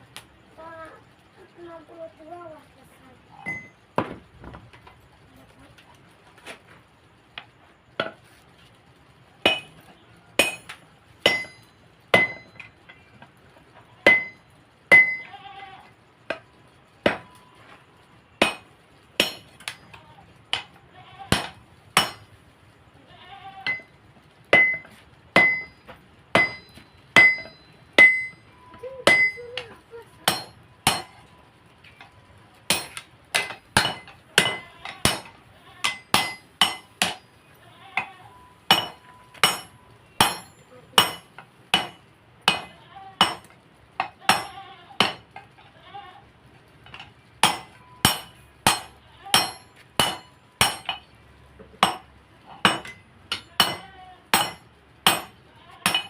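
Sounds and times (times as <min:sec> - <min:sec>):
hammer clanging on anvil: 0:09.5 - 0:13.0, 0:14.0 - 0:15.3, 0:17.1 - 0:17.4, 0:18.4 - 0:20.7, 0:21.3 - 0:22.3, 0:23.6 - 0:24.0, 0:24.6 - 0:29.4, 0:30.2 - 0:31.3, 0:32.7 - 0:37.3, 0:38.7 - 0:45.3, 0:46.9 - 0:51.1, 0:51.8 - 0:56.0.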